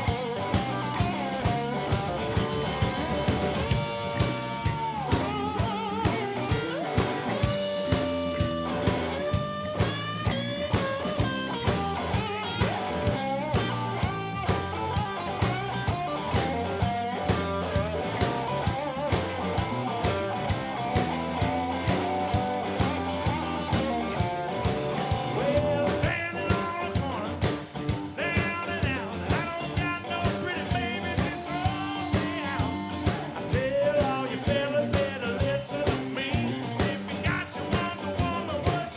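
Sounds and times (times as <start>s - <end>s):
drum kit beat: 0.0s - 38.9s
electric guitar: 0.0s - 38.9s
man singing: 25.0s - 38.9s.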